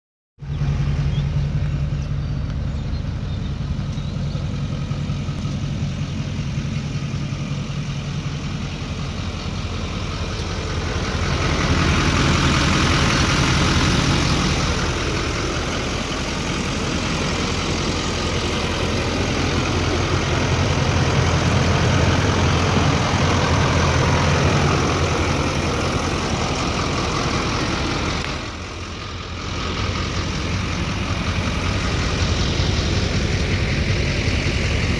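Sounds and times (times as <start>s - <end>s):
diesel pickup engine idling: 0.4s - 34.9s.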